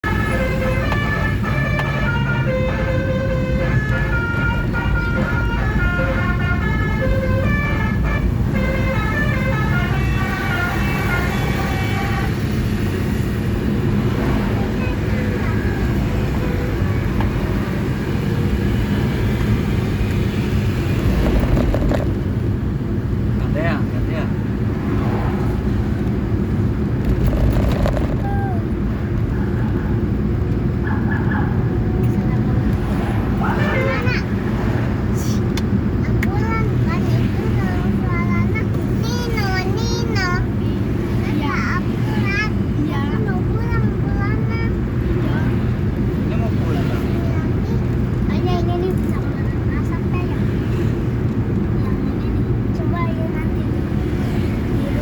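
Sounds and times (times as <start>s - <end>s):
multi-trumpet vehicle horn tune: 0.0s - 12.6s
large engine rumbling: 0.0s - 55.0s.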